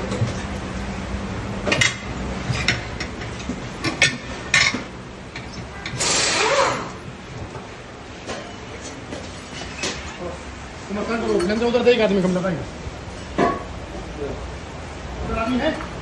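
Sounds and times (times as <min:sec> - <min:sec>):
short hiss: 0:06.0 - 0:06.6.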